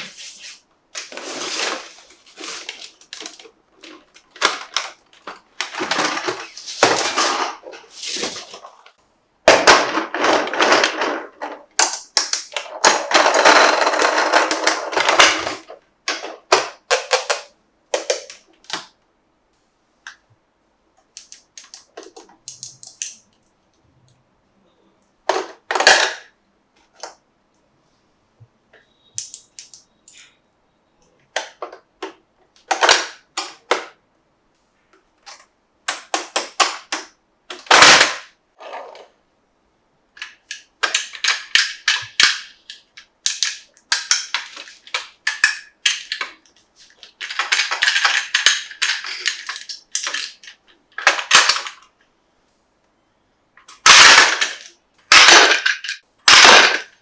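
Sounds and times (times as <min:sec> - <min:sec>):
plastic toy pieces clicking: 0:10.2 - 0:18.4, 0:21.1 - 0:23.4, 0:29.2 - 0:30.3, 0:40.2 - 0:51.8.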